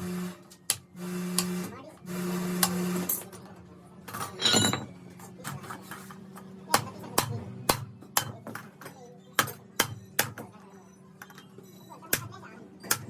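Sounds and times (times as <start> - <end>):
hand tools tapping metal: 4.4 - 4.9.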